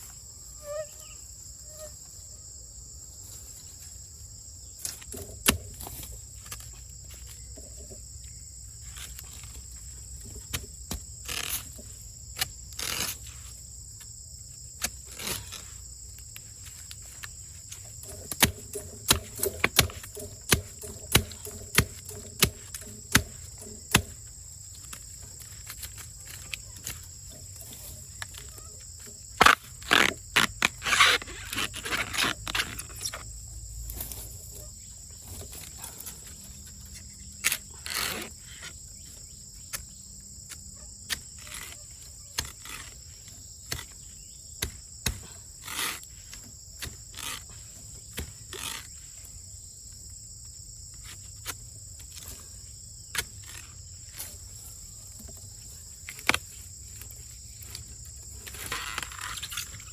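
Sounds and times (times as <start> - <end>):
insects chirring: 0.0 - 59.9
sharp snaps and knocks: 4.8 - 8.0, 14.8 - 49.3, 53.1 - 59.9.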